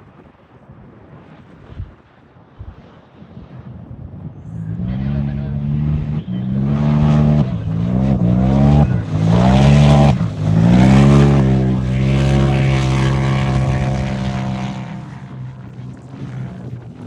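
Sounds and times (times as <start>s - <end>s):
turbocharged engine revving: 4.5s - 17.0s.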